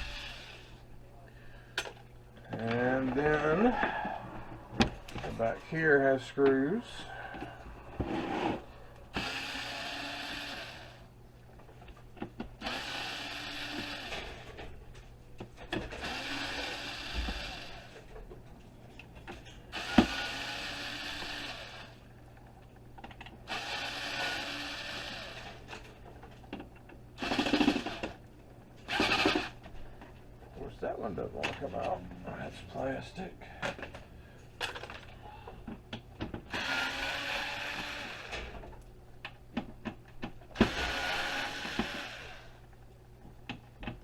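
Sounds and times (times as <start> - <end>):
power driver whirring: 0.0 - 0.8, 8.5 - 11.0, 12.6 - 14.3, 15.9 - 18.0, 19.7 - 22.0, 23.5 - 25.6, 28.9 - 29.6, 36.5 - 38.6, 40.6 - 42.6.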